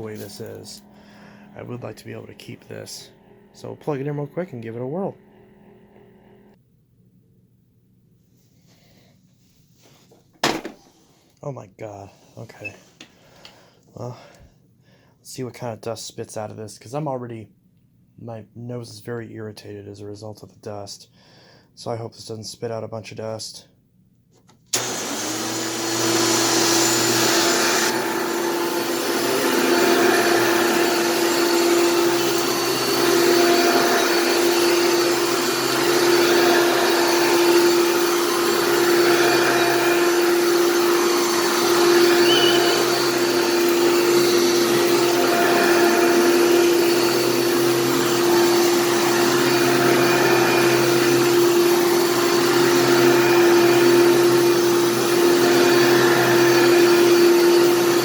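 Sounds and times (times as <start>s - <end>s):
vacuum cleaner running: 0.0s - 6.6s, 24.7s - 58.0s.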